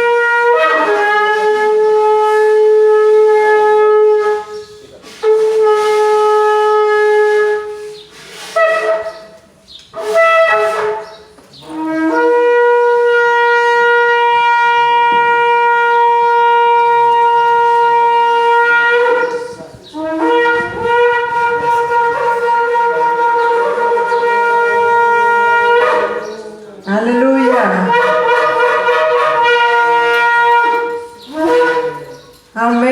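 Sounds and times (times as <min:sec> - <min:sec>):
shofar blasts: 0:00.0 - 0:32.9.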